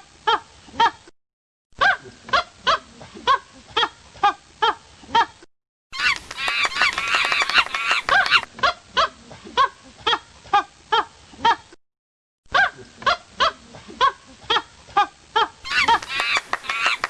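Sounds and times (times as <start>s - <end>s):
monkey hooting calls: 6.0s - 8.5s, 15.7s - 17.0s.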